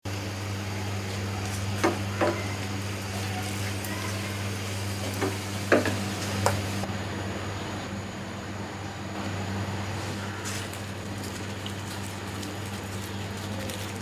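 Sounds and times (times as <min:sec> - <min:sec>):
steady low hum: 0:00.0 - 0:14.0
oil sizzling in a pan: 0:00.1 - 0:06.9
spatula knocking against pan: 0:01.8 - 0:02.4, 0:05.2 - 0:06.6.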